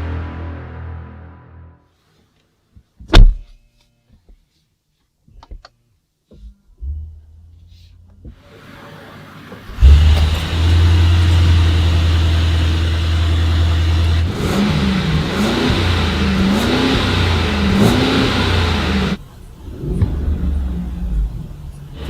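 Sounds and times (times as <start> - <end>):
car engine idling: 6.8 - 22.0
car engine revving: 8.4 - 22.0.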